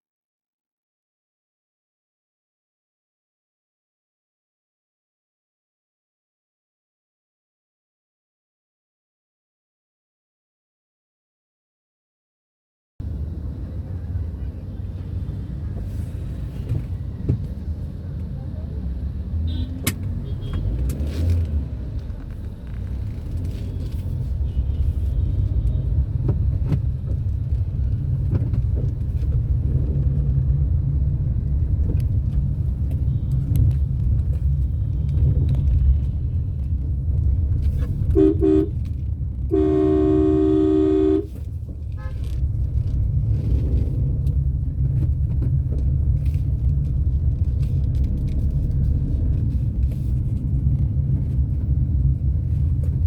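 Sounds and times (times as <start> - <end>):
car driving rumble: 13.0 - 53.0
car horn beeping: 19.4 - 20.8, 38.1 - 38.8, 39.5 - 41.4, 42.0 - 42.3.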